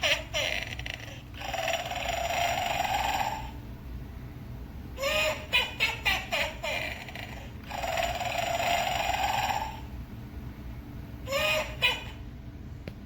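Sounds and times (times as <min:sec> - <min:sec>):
toy figure snoring: 0:00.4 - 0:03.6, 0:06.9 - 0:09.9.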